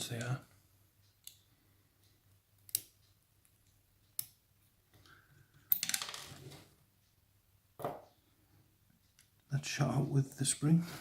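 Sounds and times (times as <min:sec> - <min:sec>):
small metal clicks: 0:02.6 - 0:04.4.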